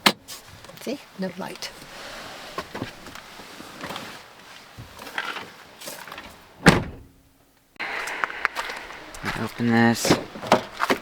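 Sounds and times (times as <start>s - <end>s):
car door slamming shut: 6.6s - 7.2s.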